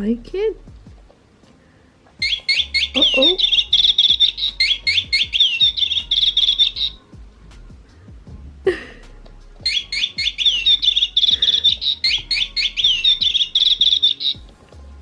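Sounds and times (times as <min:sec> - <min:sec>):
electronic bird chirping: 0:02.2 - 0:07.0, 0:09.6 - 0:14.5.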